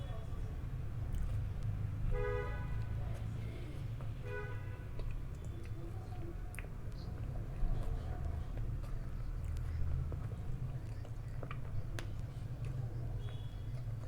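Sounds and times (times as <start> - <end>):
close chewing with mouth clicks: 0.9 - 1.9, 4.8 - 14.0.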